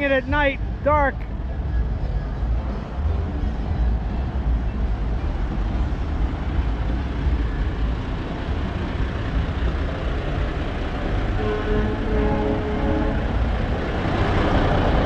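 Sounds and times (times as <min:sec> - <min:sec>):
diesel truck engines idling: 0:00.0 - 0:15.0.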